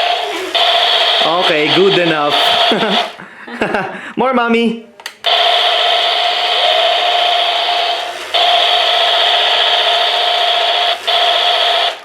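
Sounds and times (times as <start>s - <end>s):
toy rifle electronic buzzing: 0.0s - 3.2s, 5.2s - 12.0s.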